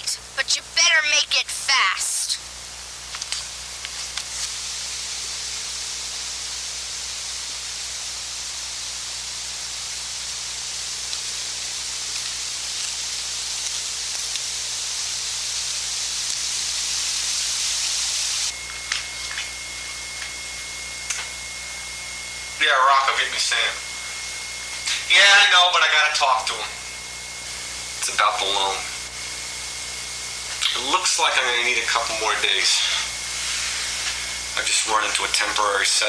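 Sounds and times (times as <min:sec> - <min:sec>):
loud steady hiss: 0:00.0 - 0:36.0
low hum: 0:18.1 - 0:35.7
steady high tone: 0:18.5 - 0:29.1, 0:30.6 - 0:33.3.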